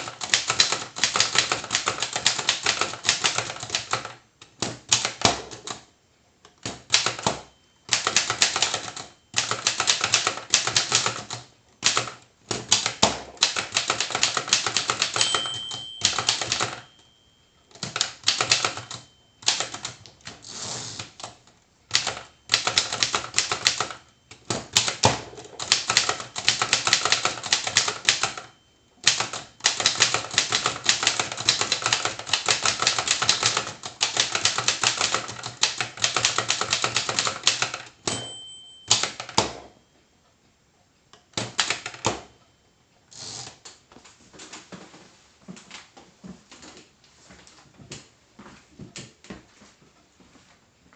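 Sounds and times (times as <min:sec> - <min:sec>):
typewriter keys striking: 0:00.0 - 0:05.9, 0:06.6 - 0:16.9, 0:17.7 - 0:39.6, 0:41.3 - 0:42.4
typewriter bell ringing: 0:06.9 - 0:11.3, 0:13.6 - 0:20.0, 0:21.9 - 0:39.9.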